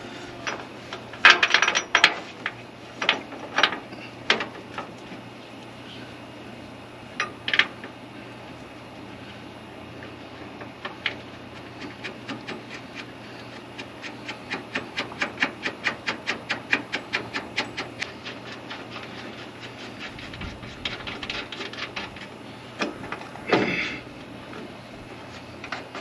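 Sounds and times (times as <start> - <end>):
sharp clicks from hay baler: 10.0 - 26.0.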